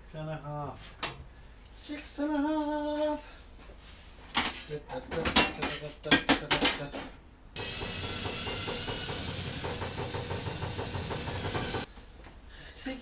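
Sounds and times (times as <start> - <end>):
small motor running: 7.6 - 11.8.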